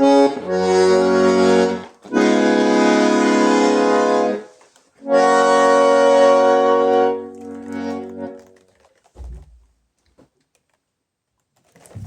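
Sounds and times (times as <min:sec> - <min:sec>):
bandoneon playing reedy chords: 0:00.0 - 0:08.3.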